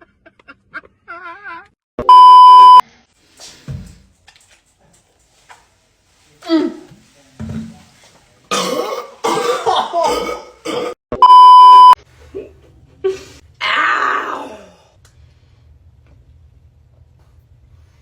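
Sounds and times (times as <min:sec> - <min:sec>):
censor bleep: 0:02.0 - 0:02.8, 0:11.2 - 0:12.0
person coughing and spluttering: 0:08.5 - 0:11.0.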